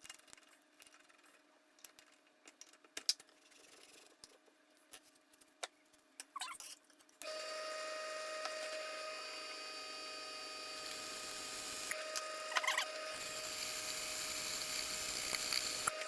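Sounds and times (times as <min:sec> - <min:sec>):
electric drill whining: 0:07.3 - 0:16.0.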